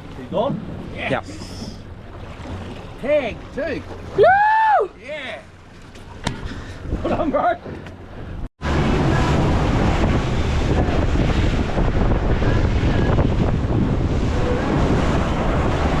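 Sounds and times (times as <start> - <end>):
sea waves washing: 0.0 - 16.0
wind buffeting microphone: 6.2 - 16.0.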